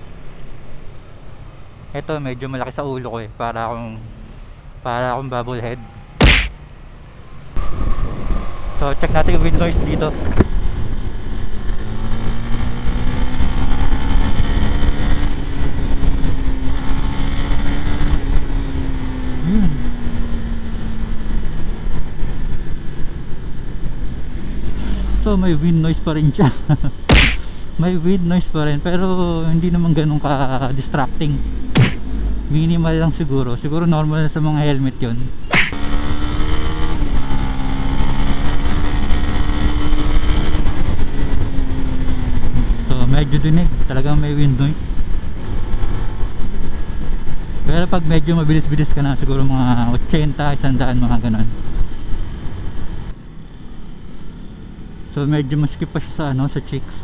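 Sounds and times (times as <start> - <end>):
motorcycle engine cruising: 0.0 - 57.0
wind noise rumble: 7.5 - 25.5, 35.4 - 48.0
wind rushing: 7.6 - 17.6.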